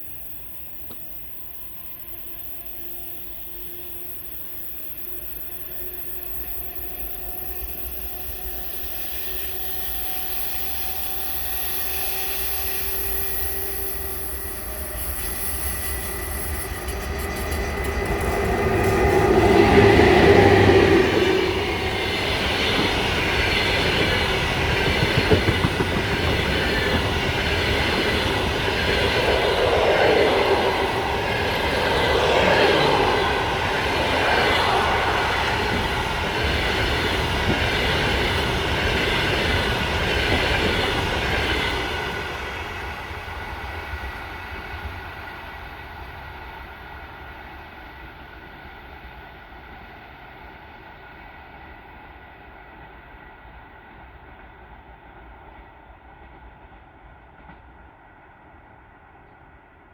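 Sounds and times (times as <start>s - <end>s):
wheels squealing against rails: 0.0s - 43.4s
electric locomotive passing: 0.0s - 59.9s
wheels clacking over rail joints: 16.1s - 42.1s.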